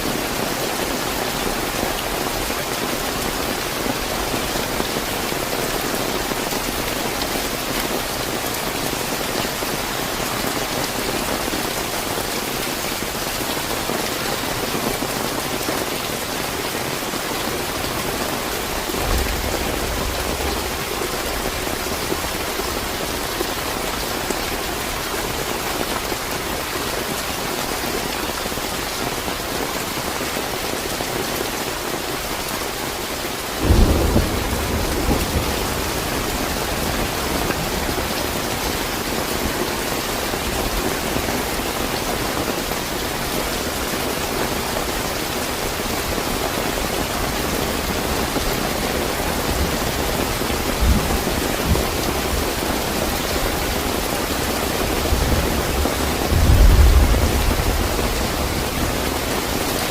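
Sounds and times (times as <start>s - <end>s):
heavy rain hissing: 0.0s - 59.9s
low rumble of thunder: 17.4s - 25.0s, 33.5s - 38.8s, 54.6s - 59.2s
thunderclap: 18.1s - 23.5s, 33.6s - 38.4s, 55.0s - 59.1s.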